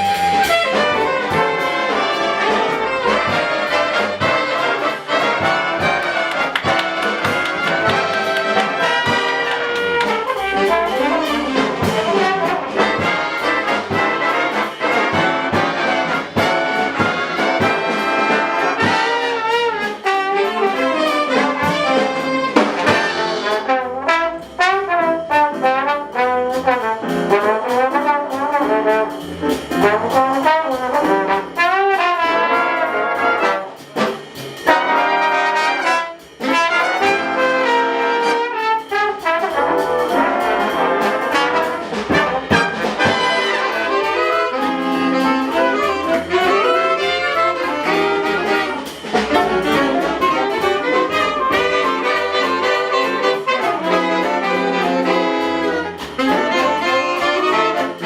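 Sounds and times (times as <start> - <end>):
drums keeping time: 0.0 - 58.0
jazz big band swing: 0.0 - 58.0
trumpets and trombones: 0.0 - 58.0.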